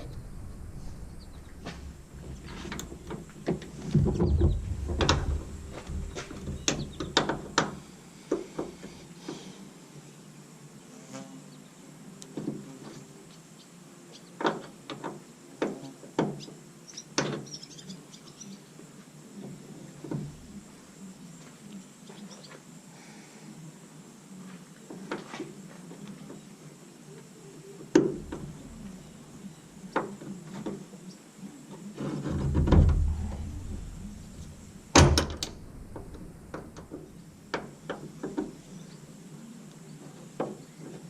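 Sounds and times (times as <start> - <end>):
low rumble: 0.0 - 7.0, 32.4 - 37.5.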